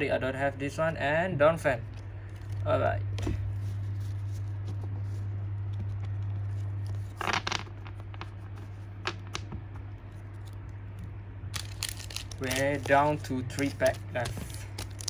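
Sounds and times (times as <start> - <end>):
steady low hum: 0.0 - 15.0
foil wrapper tearing and crinkling: 11.6 - 15.0.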